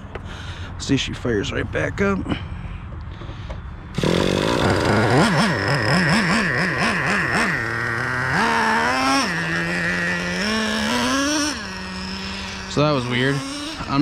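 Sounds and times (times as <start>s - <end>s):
small nitro engine revving: 3.9s - 14.0s.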